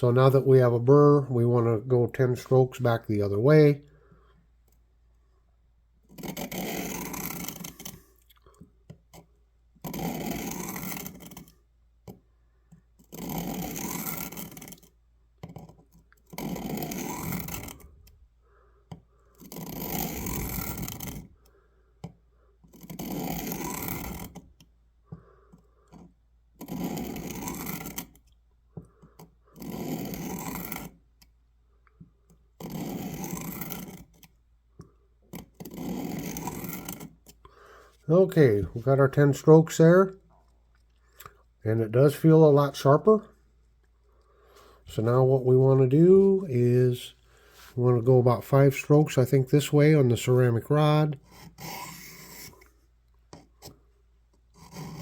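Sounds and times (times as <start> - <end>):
knife blade scraping sharpener: 6.1 - 8.0, 9.9 - 11.5.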